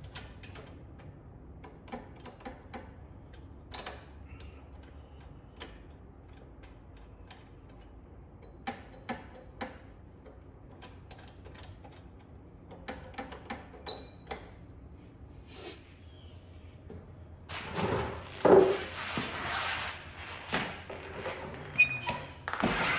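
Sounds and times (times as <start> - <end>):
hand tools clicking and knocking: 1.7 - 14.6.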